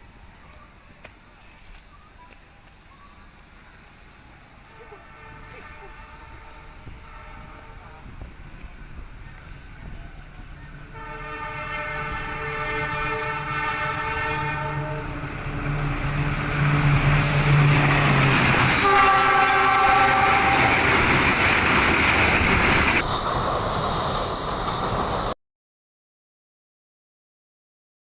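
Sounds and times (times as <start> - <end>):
train passing with wheel noise: 0.0 - 25.4
locomotive horn: 4.6 - 8.3, 10.9 - 15.4, 16.8 - 21.1.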